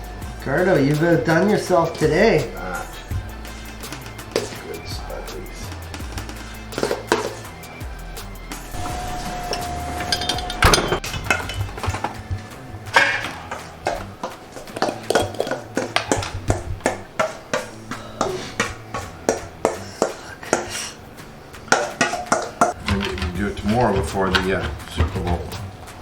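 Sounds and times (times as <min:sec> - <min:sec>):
utensils clinking against dishes: 0:00.0 - 0:26.0
steady tone: 0:08.6 - 0:11.7.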